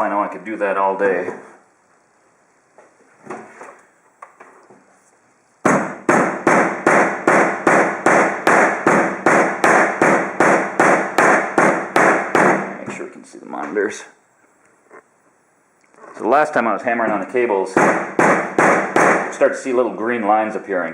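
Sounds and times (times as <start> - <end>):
hammer striking cable: 5.7 - 12.7, 17.8 - 19.4.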